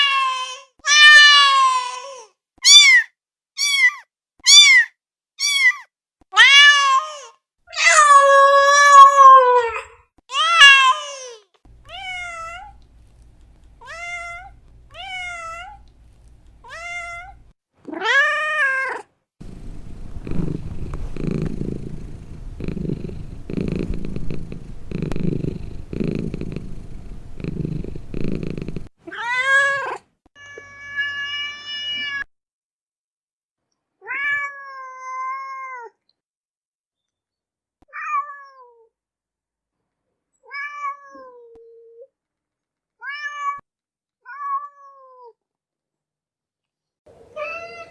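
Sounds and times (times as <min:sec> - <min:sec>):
cat meowing: 0:19.4 - 0:28.9
cat purring: 0:19.4 - 0:28.9.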